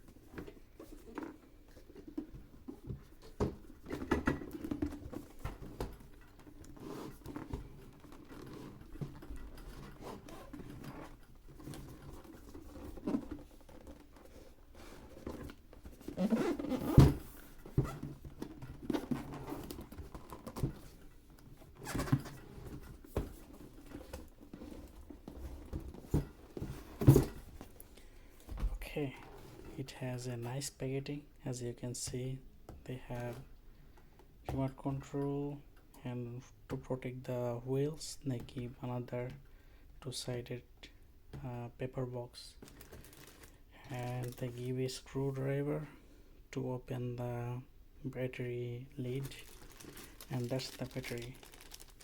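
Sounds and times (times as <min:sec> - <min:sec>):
packaging rustling and scraping: 0:00.5 - 0:27.8, 0:42.6 - 0:44.7, 0:49.1 - 0:52.0.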